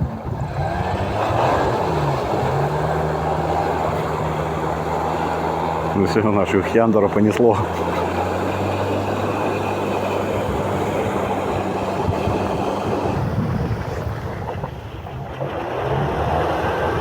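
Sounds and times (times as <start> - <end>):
vehicle engine drone: 0.0 - 17.0.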